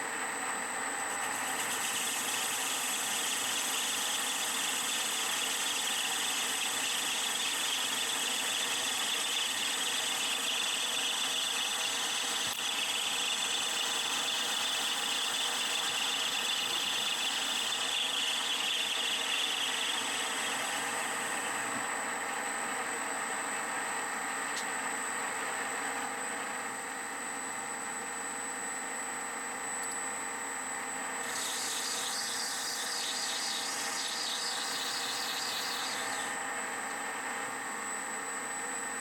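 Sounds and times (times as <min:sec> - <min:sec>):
metal lathe cutting: 0:01.1 - 0:22.2, 0:31.1 - 0:37.7.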